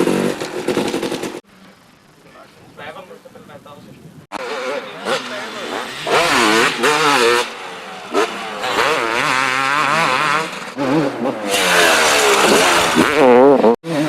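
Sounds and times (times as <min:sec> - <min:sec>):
motocross engine revving: 0:00.0 - 0:01.4, 0:04.3 - 0:14.0.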